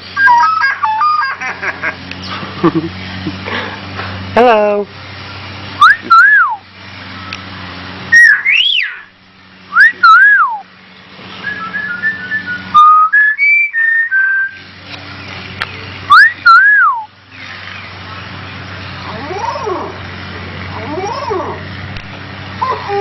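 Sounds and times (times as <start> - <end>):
cockatiel whistling: 0.2 - 1.5, 5.8 - 6.6, 8.1 - 9.1, 9.7 - 10.6, 11.4 - 14.7, 16.1 - 17.1.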